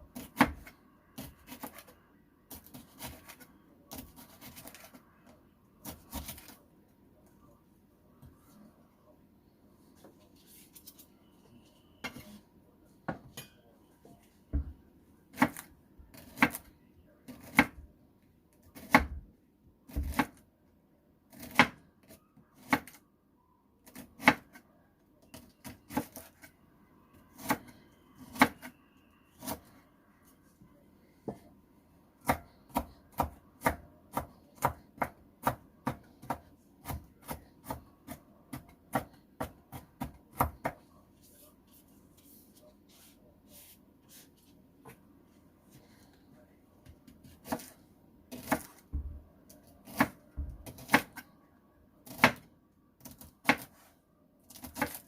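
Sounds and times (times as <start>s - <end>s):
knife chopping on cutting board: 19.9s - 20.4s, 47.2s - 47.7s, 49.8s - 51.2s.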